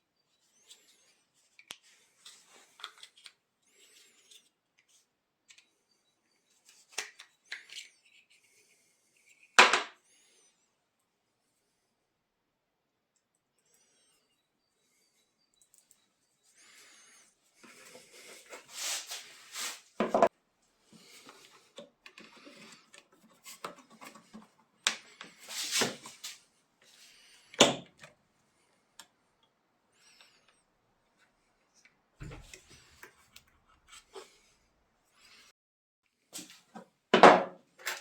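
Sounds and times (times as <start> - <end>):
tools rubbing and scraping: 17.0 - 20.3.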